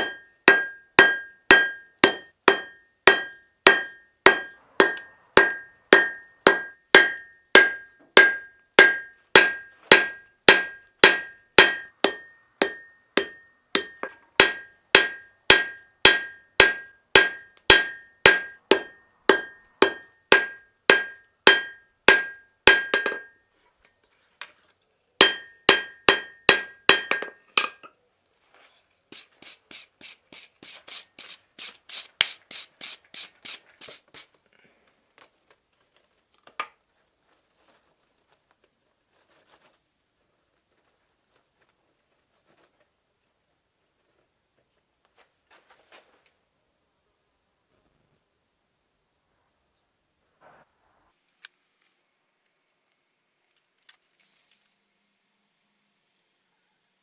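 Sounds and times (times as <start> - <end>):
hammer ringing on steel anvil: 0.0 - 23.4, 25.2 - 27.4.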